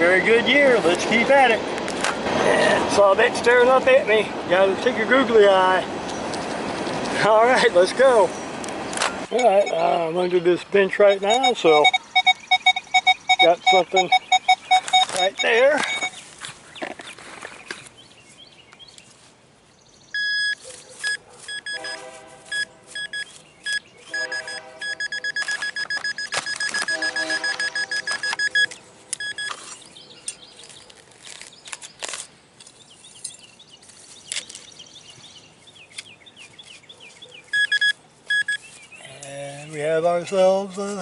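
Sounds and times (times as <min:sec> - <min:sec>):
metal detector beeping: 0:09.3 - 0:10.0, 0:11.0 - 0:16.2, 0:20.2 - 0:29.8, 0:37.5 - 0:38.7.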